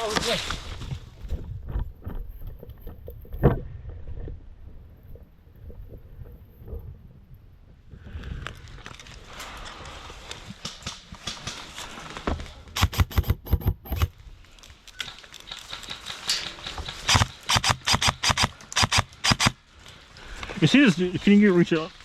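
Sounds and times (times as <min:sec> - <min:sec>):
dry leaves rustling: 0:00.0 - 0:01.3, 0:08.7 - 0:12.8, 0:14.2 - 0:22.0
rapid airsoft gunfire: 0:12.8 - 0:14.1, 0:16.9 - 0:19.6.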